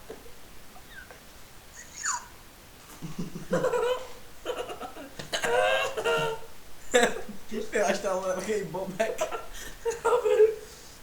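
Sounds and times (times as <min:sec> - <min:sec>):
giggling laughter: 0:02.9 - 0:08.0, 0:08.9 - 0:10.7.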